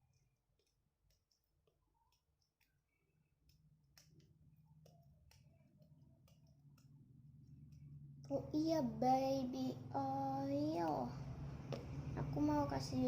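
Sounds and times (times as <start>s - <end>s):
faint irregular clicks: 0.0s - 9.0s
low hum: 2.9s - 13.0s.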